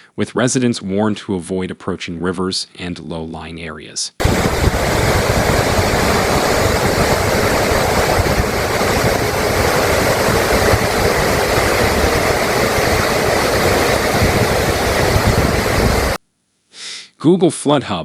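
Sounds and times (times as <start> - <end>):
floodwater rushing: 4.2 - 16.2.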